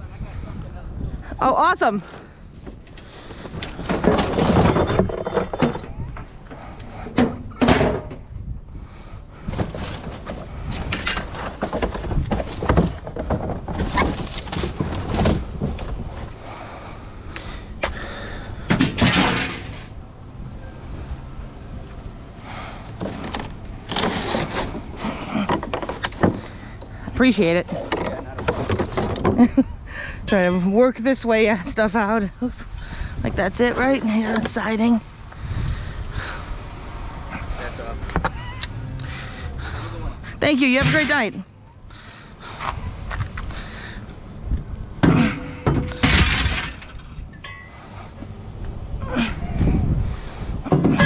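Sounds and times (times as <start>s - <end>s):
scrap metal clattering: 2.2s - 6.0s, 18.7s - 19.9s, 45.0s - 48.2s.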